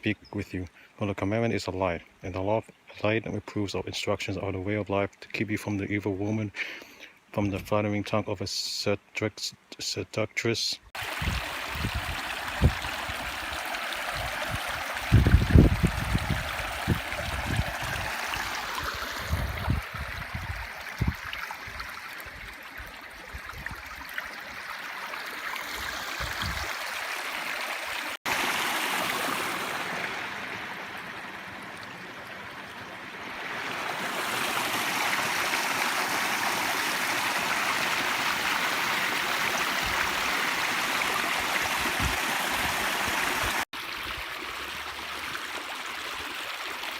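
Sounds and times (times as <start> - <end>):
stream of running water: 10.9 - 46.9.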